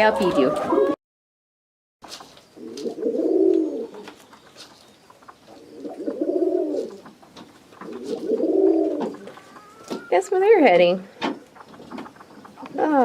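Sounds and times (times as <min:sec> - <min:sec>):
pigeon cooing: 0:00.0 - 0:01.0, 0:02.6 - 0:04.2, 0:05.4 - 0:07.2, 0:07.8 - 0:10.3.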